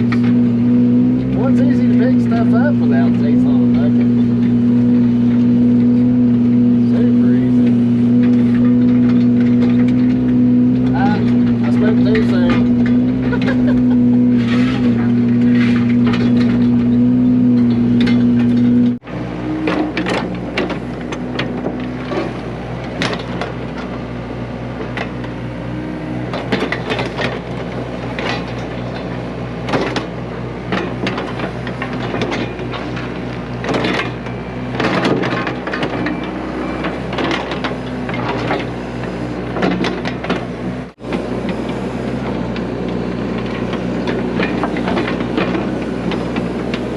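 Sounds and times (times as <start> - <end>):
excavator diesel engine: 0.0 - 46.9
bucket scraping soil and stones: 14.4 - 16.3.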